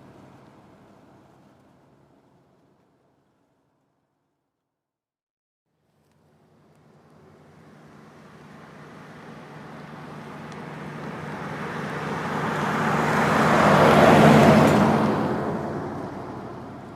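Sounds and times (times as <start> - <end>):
car engine hum approaching: 5.8 - 16.9.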